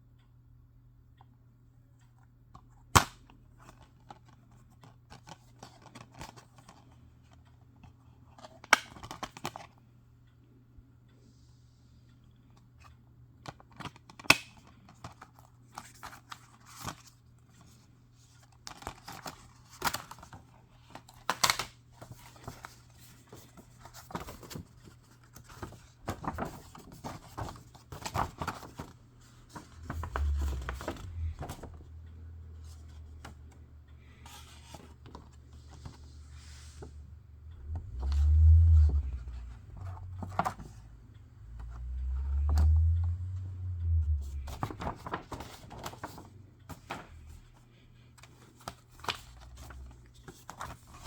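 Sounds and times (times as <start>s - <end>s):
low rumble: 29.7s - 33.1s, 36.0s - 45.2s.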